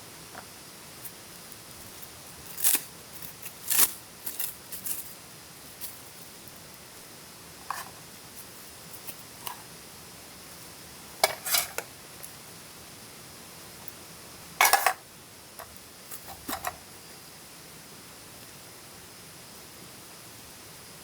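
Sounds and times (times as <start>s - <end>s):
steady soft hiss: 0.0s - 21.0s
small hard objects clattering: 14.6s - 15.0s.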